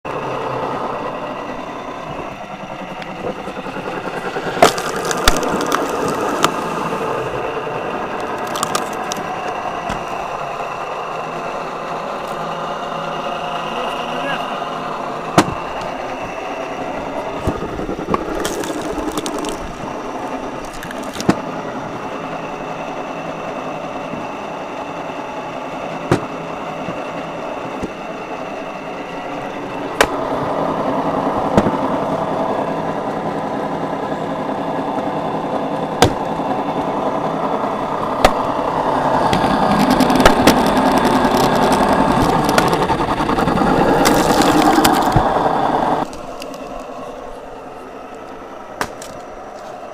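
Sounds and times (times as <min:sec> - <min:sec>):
log splitter motor running: 0:00.0 - 0:49.9
logs cracking as they split: 0:04.2 - 0:10.3, 0:17.3 - 0:21.5, 0:30.0 - 0:30.3, 0:36.0 - 0:36.4, 0:38.2 - 0:47.0, 0:48.8 - 0:49.8.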